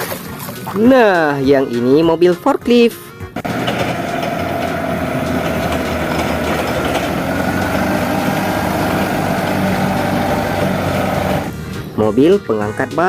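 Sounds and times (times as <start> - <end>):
vehicle engine idling: 3.4 - 12.0.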